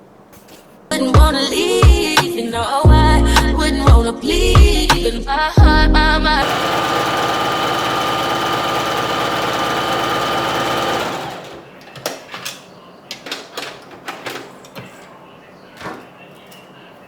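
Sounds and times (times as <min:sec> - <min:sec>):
sewing machine running fast: 0:06.4 - 0:11.6.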